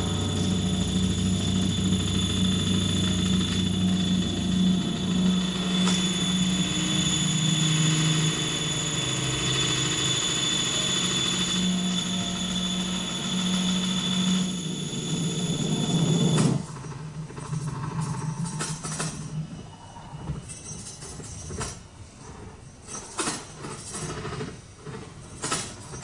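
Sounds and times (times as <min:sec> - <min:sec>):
high whine: 0:00.0 - 0:20.6
machine-like drone: 0:00.0 - 0:21.6.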